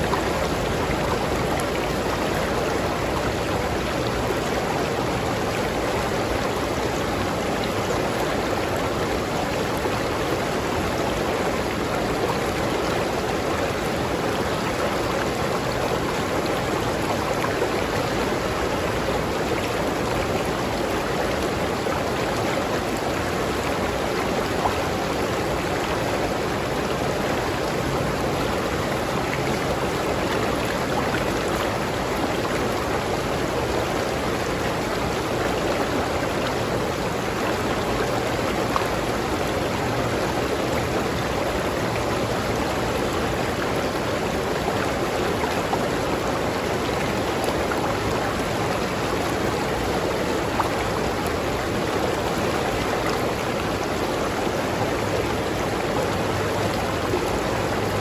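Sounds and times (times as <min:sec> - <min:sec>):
river stream rushing: 0:00.0 - 0:58.0.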